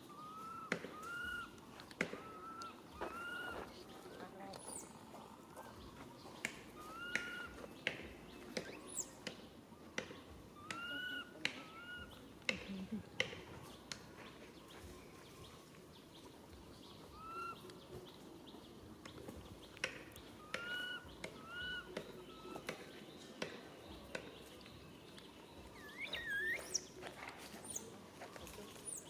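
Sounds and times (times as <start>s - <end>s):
baby monkey calling: 0.1s - 3.7s, 6.8s - 7.6s, 10.6s - 12.2s, 17.1s - 17.6s, 20.4s - 22.6s.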